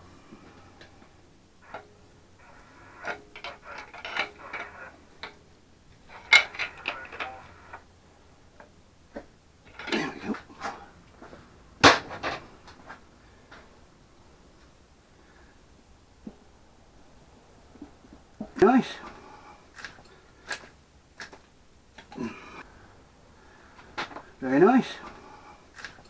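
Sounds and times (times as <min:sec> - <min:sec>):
metal tools clinking and rattling: 0:01.7 - 0:05.4, 0:06.0 - 0:07.8, 0:09.6 - 0:10.8.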